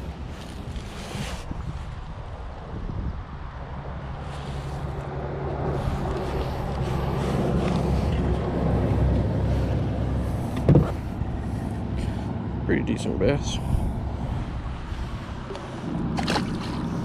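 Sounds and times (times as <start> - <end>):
steady low hum: 5.1 - 17.0
thump: 10.6 - 11.0.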